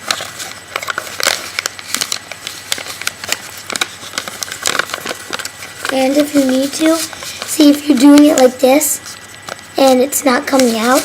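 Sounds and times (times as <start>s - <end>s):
paper crinkling and creasing: 0.0s - 11.0s.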